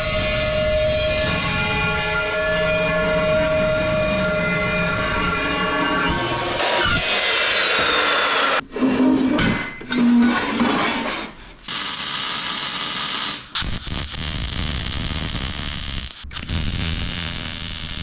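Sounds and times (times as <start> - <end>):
metal scraping: 0.1 - 11.6.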